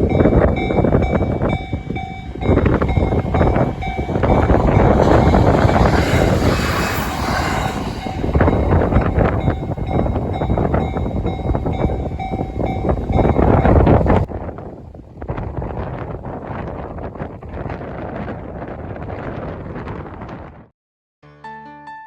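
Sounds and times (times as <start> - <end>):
wind buffeting microphone: 0.0 - 20.7
train wheels clattering over rails: 0.2 - 13.8.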